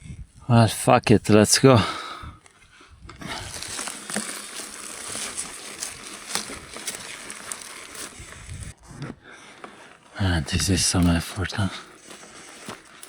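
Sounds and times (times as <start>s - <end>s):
dry grass rustling and crackling: 2.4s - 13.0s
scuffing footsteps: 3.2s - 13.0s.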